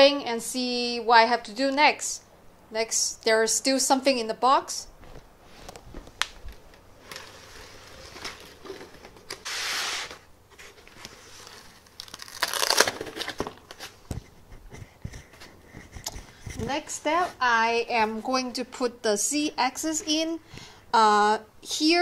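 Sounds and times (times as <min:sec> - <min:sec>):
packaging rustling and crinkling: 0:05.6 - 0:14.3.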